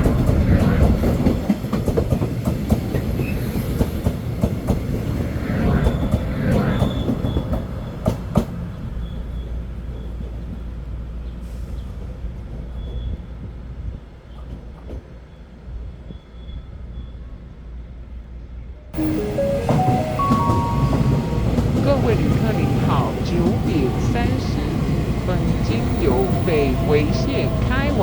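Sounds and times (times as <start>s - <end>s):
train wheels clattering over rails: 0.0s - 5.2s.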